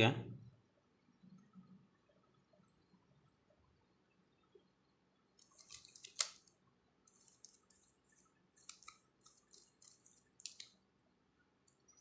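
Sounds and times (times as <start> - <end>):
puzzle cube clicking turns: 5.4 - 7.9, 8.6 - 10.8.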